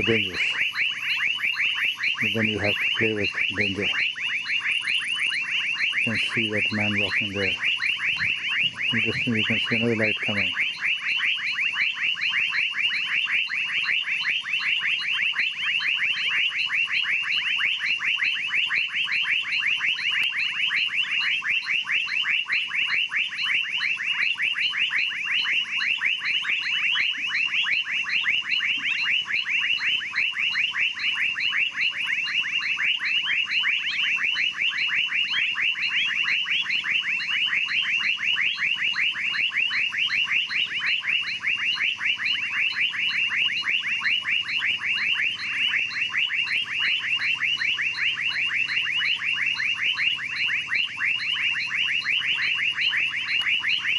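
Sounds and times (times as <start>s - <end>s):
rapid chirping calls: 0.0s - 16.4s.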